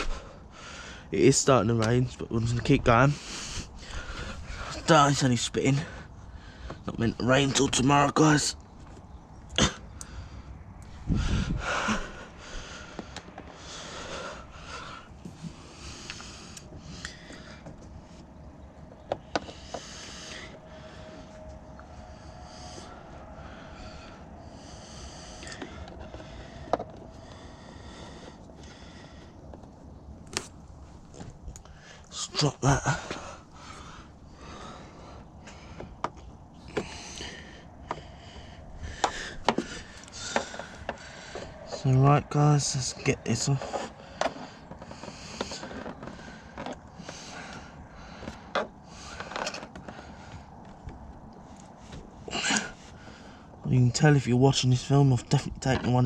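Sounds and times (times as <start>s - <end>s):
hands scraping and rustling trim: 12.8s - 56.0s.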